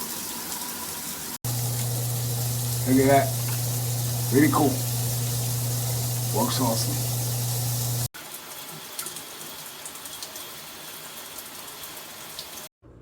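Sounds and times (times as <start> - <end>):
shower head spraying water: 1.4 - 8.1.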